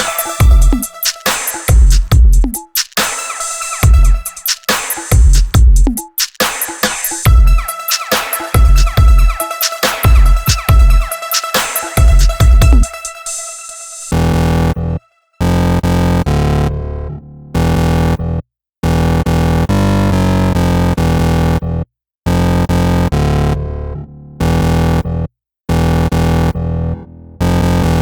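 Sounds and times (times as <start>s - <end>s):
electronic music with synth bass: 0.0s - 18.2s, 25.8s - 28.0s.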